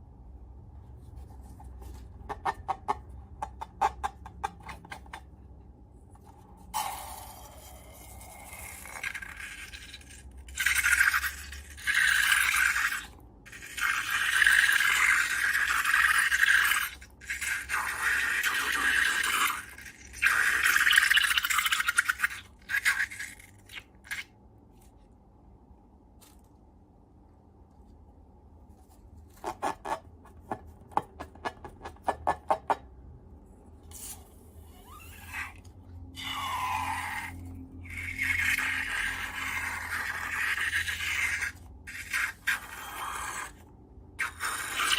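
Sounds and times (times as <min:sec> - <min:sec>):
scraping and rubbing: 0:28.6 - 0:31.3.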